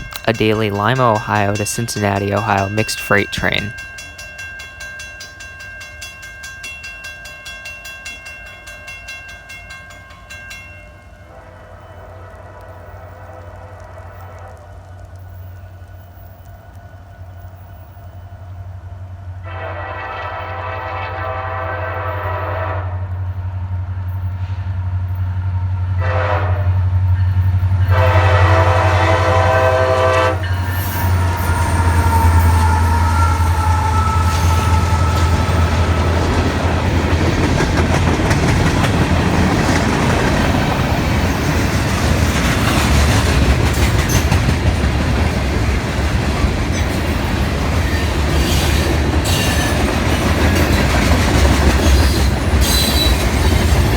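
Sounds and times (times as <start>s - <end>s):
train wheels on rails: 0.0s - 53.9s
locomotive horn blasts: 19.4s - 23.1s, 26.0s - 26.8s, 27.9s - 36.7s
locomotive engine hum: 23.1s - 53.9s.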